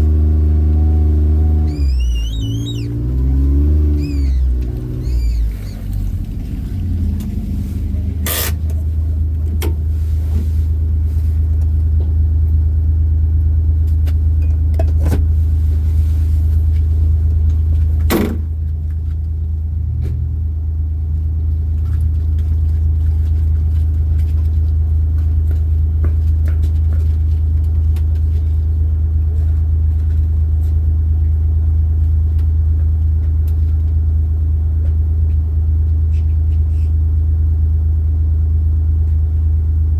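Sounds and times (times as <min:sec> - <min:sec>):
car engine rumbling: 0:00.0 - 0:39.9.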